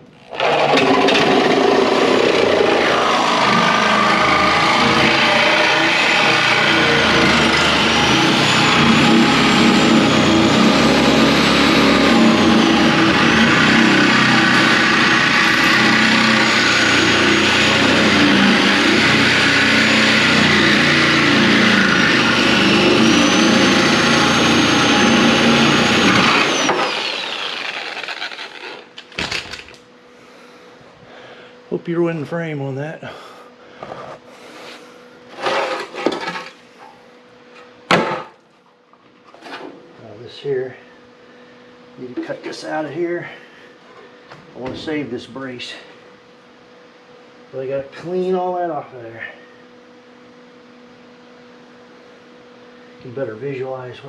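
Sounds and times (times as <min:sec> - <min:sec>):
power cutting tool whining: 0:00.0 - 0:29.7.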